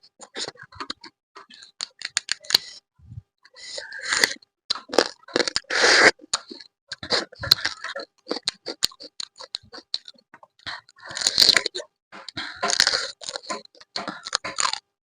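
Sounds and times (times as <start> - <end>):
crunchy chewing: 0.0 - 2.8, 3.5 - 14.9
crab shell cracking: 1.7 - 2.7, 4.7 - 10.2, 11.1 - 14.9.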